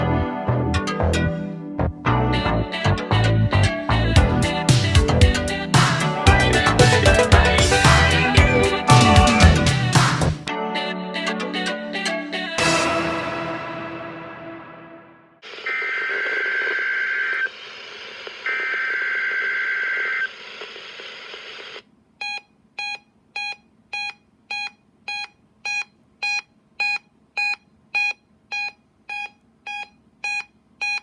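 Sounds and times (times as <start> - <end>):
radio static: 15.4 - 21.8.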